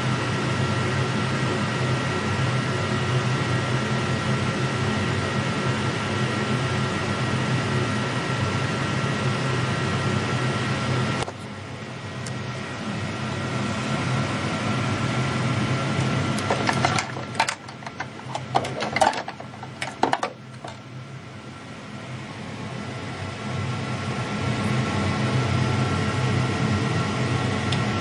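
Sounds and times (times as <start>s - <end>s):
lathe mechanical hum: 0.0s - 28.0s
mechanical clicks and clatters: 16.4s - 20.8s.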